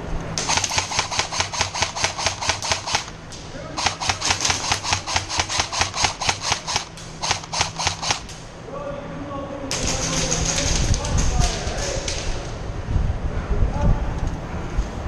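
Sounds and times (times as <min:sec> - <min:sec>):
airsoft gun rapid firing: 0:00.4 - 0:08.4, 0:09.7 - 0:12.3.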